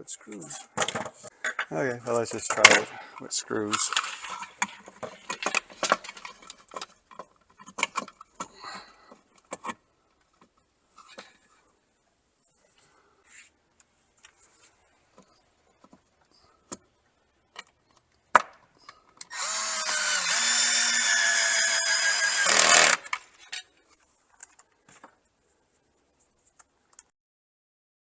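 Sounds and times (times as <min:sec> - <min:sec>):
power drill motor running: 0:19.3 - 0:23.2.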